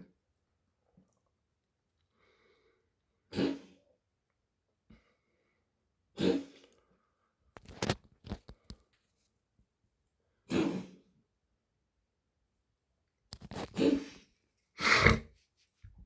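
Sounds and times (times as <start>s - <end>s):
pet coughing: 14.8s - 15.3s.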